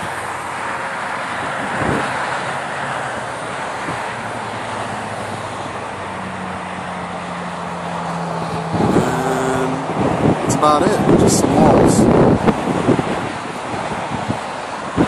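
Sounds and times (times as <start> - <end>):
engine running steadily: 0.0 - 15.0
traffic noise: 0.0 - 15.0
high-pitched engine: 2.2 - 12.1.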